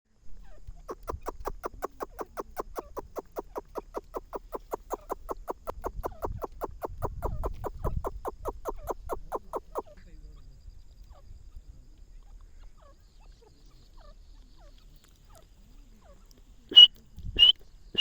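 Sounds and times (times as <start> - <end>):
francolin calling sharp notes: 16.7 - 18.0.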